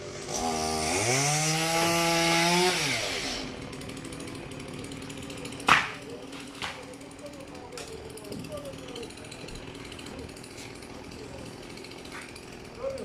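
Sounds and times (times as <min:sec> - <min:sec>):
chainsaw engine revving: 0:00.0 - 0:13.0.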